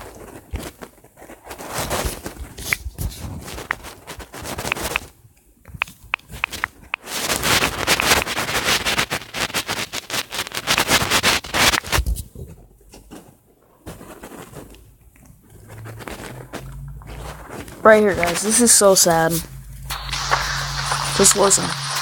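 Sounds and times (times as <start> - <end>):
rustling and scraping handling noise: 0.0 - 22.0
dense crackling clicks: 3.5 - 12.0, 13.8 - 22.0.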